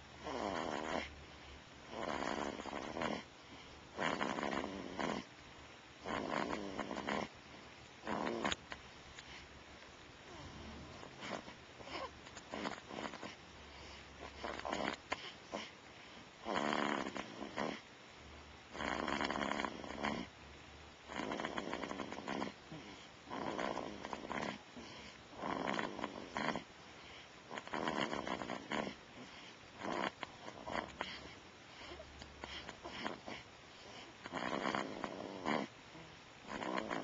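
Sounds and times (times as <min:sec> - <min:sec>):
baby snoring: 0:00.2 - 0:01.2, 0:01.8 - 0:05.3, 0:06.0 - 0:07.4, 0:08.0 - 0:08.7, 0:10.3 - 0:17.9, 0:18.7 - 0:20.3, 0:21.0 - 0:37.0.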